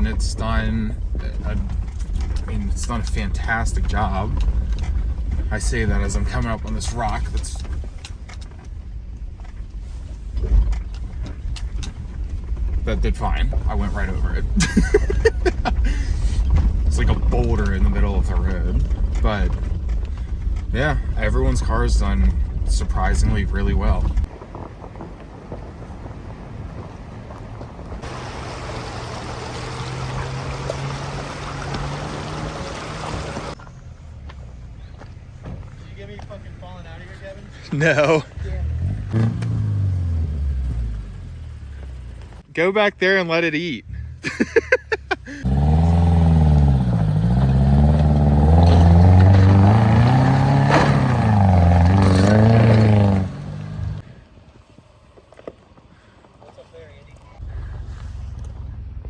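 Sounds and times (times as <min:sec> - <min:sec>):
vehicle engine droning: 0:00.0 - 0:42.5, 0:43.6 - 0:59.0
vehicle engine revving: 0:28.0 - 0:34.2, 0:38.2 - 0:42.4, 0:45.3 - 0:54.1.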